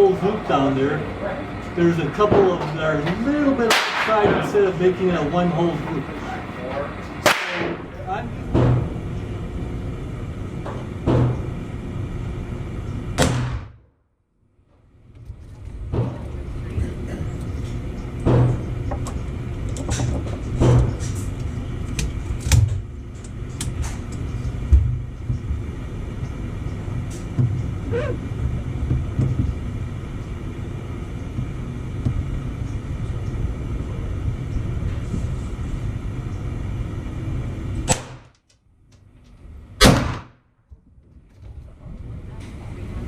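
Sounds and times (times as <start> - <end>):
gunshot cracks: 3.7 - 4.2, 7.2 - 7.8, 13.2 - 13.8, 37.9 - 38.3, 39.8 - 40.4.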